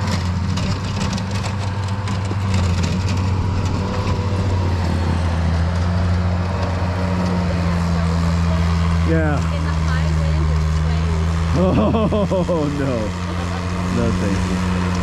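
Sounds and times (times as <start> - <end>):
wind buffeting microphone: 1.2 - 8.5.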